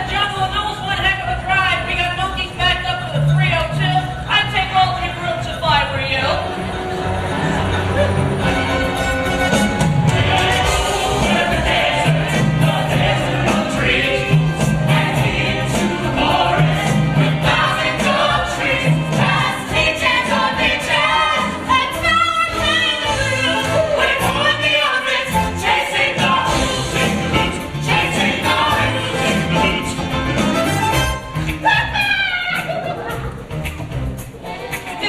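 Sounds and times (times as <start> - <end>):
ensemble singing: 4.0 - 31.3
pit orchestra: 5.0 - 35.0.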